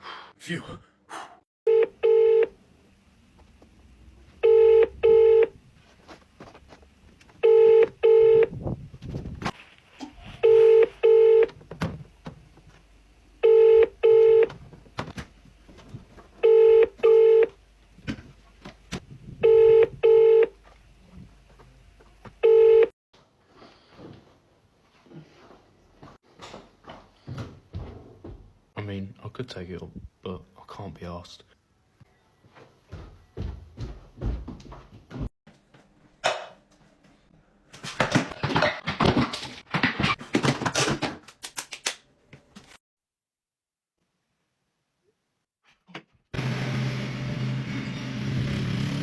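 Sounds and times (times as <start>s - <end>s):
telephone double ringing tone: 1.7s - 2.5s, 4.4s - 5.5s, 7.4s - 8.5s, 10.4s - 11.5s, 13.4s - 14.5s, 16.4s - 17.5s, 19.4s - 20.5s.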